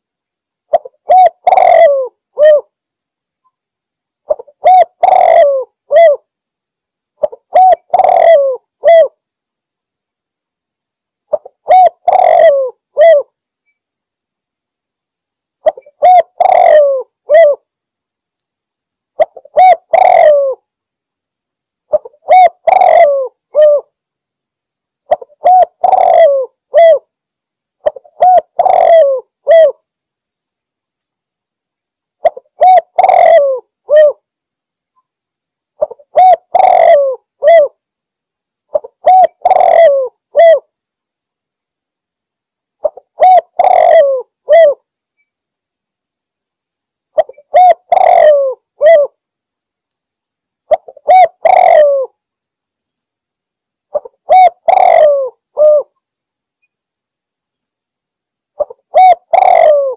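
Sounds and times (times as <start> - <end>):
dove cooing: 0.7 - 2.7, 4.3 - 6.3, 7.2 - 9.2, 11.3 - 13.3, 15.6 - 17.6, 19.2 - 20.6, 21.9 - 23.9, 25.1 - 27.1, 27.8 - 29.8, 32.2 - 34.2, 35.8 - 37.8, 38.7 - 40.7, 42.8 - 44.8, 47.2 - 49.2, 50.7 - 52.2, 53.9 - 56.0, 58.6 - 59.9.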